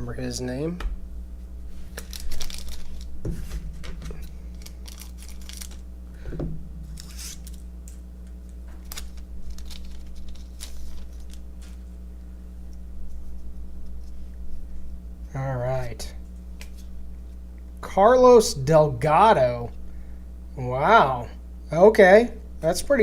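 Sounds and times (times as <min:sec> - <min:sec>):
card wrappers rustling: 0:01.7 - 0:05.9, 0:06.8 - 0:12.0
soft thumps: 0:06.2 - 0:07.0.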